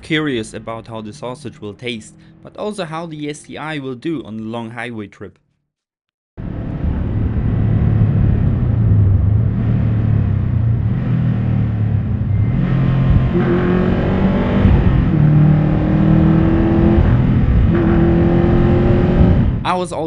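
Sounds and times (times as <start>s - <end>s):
car engine accelerating: 0.0s - 2.8s, 6.4s - 19.7s.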